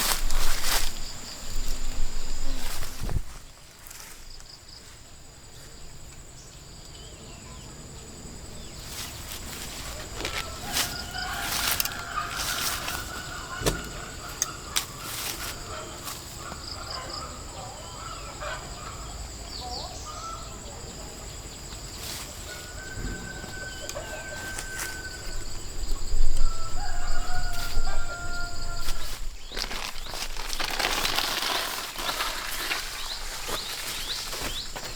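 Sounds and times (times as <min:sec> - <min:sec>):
high insect drone: 0:00.0 - 0:34.9
rooster crowing: 0:09.8 - 0:16.0, 0:22.4 - 0:29.2.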